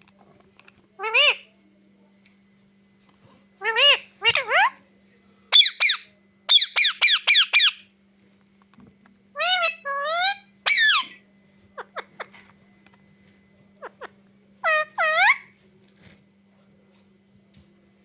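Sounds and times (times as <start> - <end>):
parrot squawking: 1.0 - 1.4, 3.6 - 4.8, 5.5 - 7.9, 9.4 - 11.2, 11.8 - 12.4, 13.8 - 15.5.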